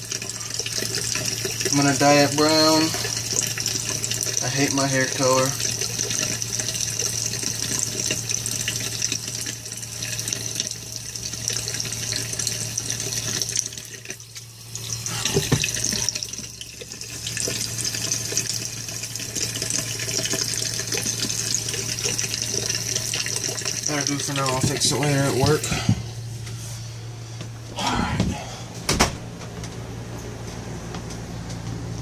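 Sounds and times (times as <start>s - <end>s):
tap water running into sink: 0.0s - 26.0s.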